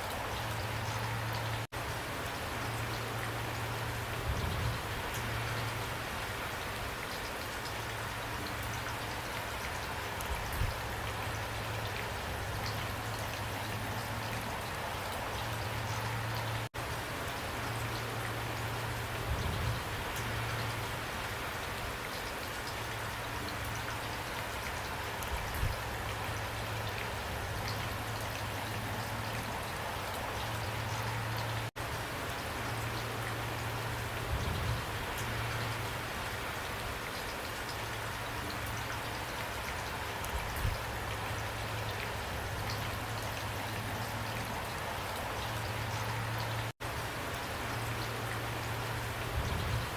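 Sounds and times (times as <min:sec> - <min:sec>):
steady rain hiss: 0:00.0 - 0:49.9
raindrop ticks: 0:07.1 - 0:13.5.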